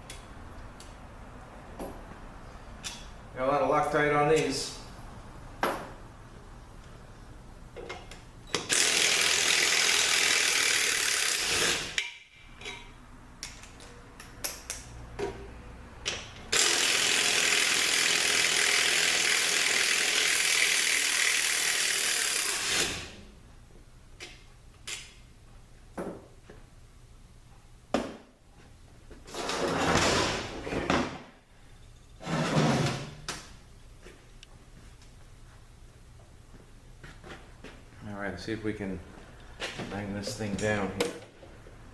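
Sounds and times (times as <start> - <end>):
power tool removing bolts: 8.6 - 12.0, 16.5 - 23.2.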